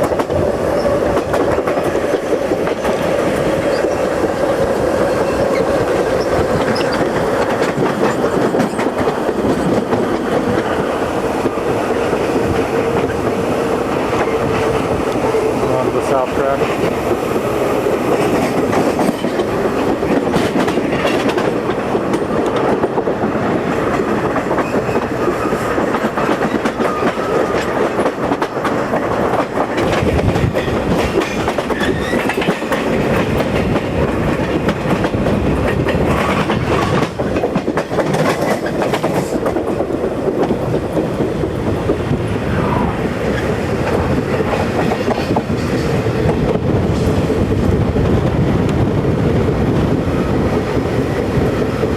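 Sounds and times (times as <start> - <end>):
wheels clicking over rail joints: 0.0 - 47.8
train running gear rumble: 0.0 - 51.9.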